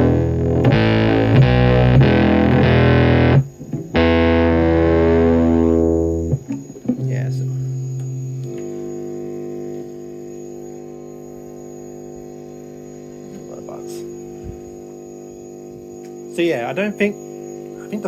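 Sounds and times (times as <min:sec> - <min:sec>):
distorted electric bass notes: 0:00.0 - 0:09.9.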